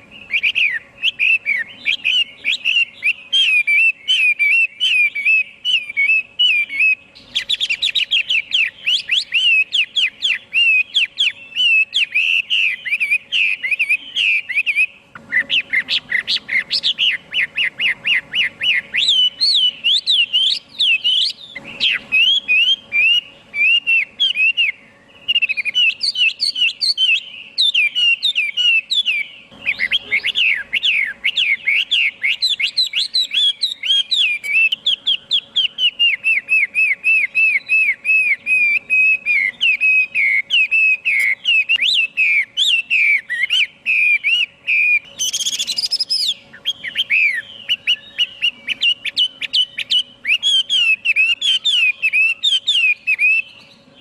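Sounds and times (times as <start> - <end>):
bird singing whistled notes: 0.0 - 54.0.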